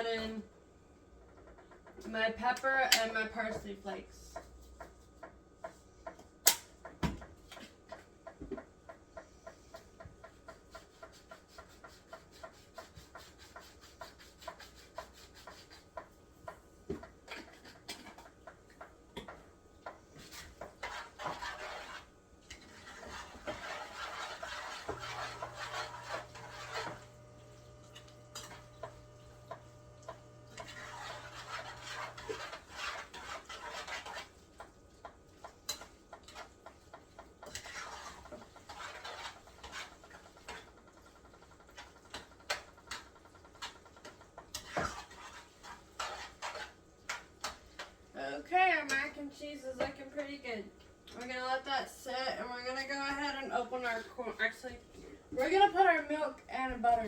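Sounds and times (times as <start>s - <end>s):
spoon scraping pot: 9.4s - 48.0s
low steady hum: 16.2s - 33.6s.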